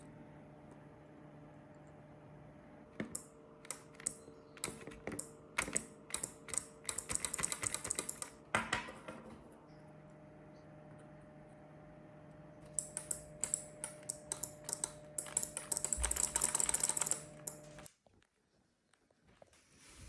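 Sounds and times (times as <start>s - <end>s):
small clicks and taps: 3.0s - 8.4s, 12.7s - 18.3s.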